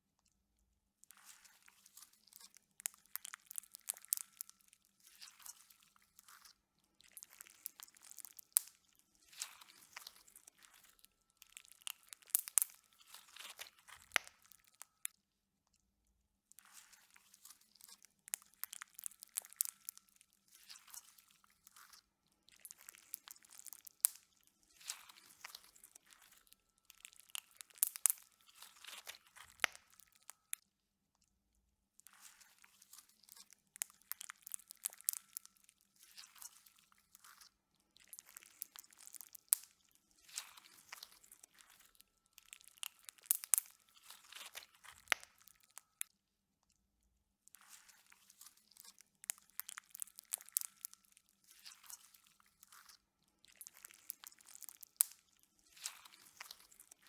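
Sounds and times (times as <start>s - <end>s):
slime squishing with crackly pops: 1.0s - 15.2s, 15.8s - 30.7s, 31.3s - 46.2s, 47.4s - 57.0s.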